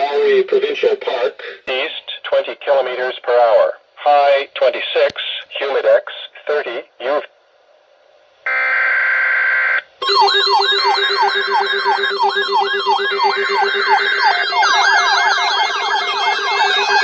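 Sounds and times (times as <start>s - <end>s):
weather radio alarms sweeping: 10.0s - 17.0s.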